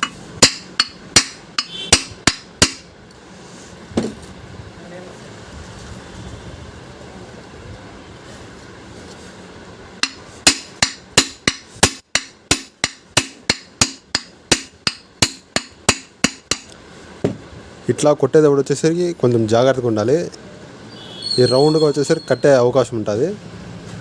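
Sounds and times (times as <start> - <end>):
hammer striking metal shaft: 0.0 - 2.9, 10.0 - 16.8.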